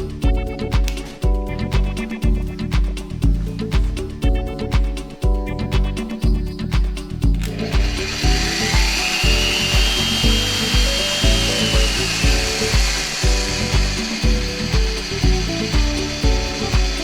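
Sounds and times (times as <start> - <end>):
background music with steady beat: 0.0 - 17.0
magnetic drill whining: 7.3 - 17.0.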